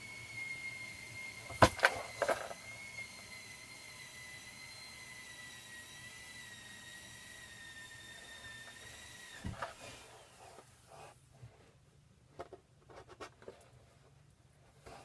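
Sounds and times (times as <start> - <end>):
small electric motor whining: 0.0 - 11.2.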